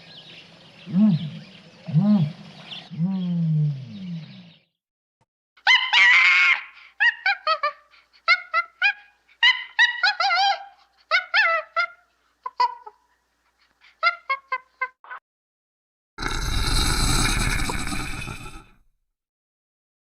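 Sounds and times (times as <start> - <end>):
birds calling: 0.0 - 4.7.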